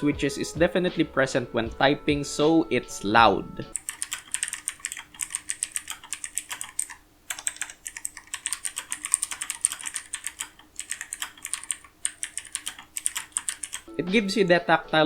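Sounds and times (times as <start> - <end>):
mechanical keyboard key clicks: 3.8 - 13.9.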